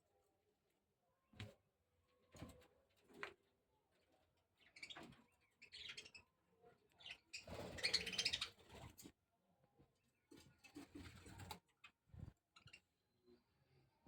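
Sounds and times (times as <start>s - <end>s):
budgerigars chirping and chattering: 4.6s - 6.2s, 7.0s - 8.6s.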